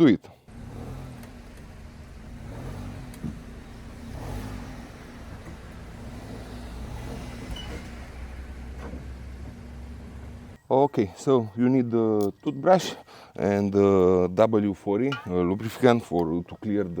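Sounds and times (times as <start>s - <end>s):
vehicle engine humming: 0.5s - 10.6s.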